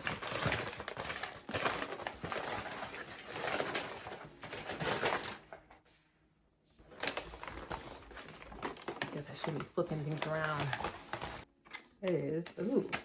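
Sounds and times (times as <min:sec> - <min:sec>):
packing wrap crinkling: 0:00.0 - 0:05.6, 0:06.9 - 0:11.5.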